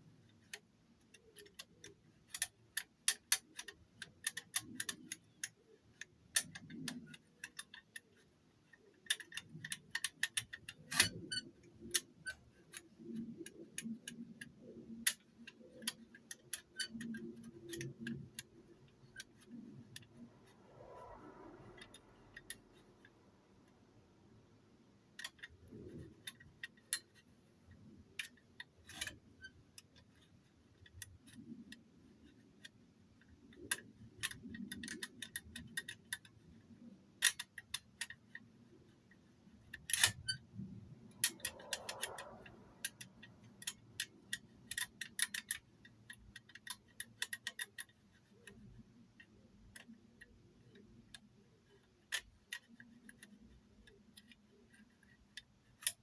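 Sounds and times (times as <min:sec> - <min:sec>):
lock pick scrape: 0:00.4 - 0:23.8, 0:25.2 - 0:56.0
lock pick clicking in lock: 0:37.2 - 0:38.4, 0:39.6 - 0:40.4, 0:41.2 - 0:56.0.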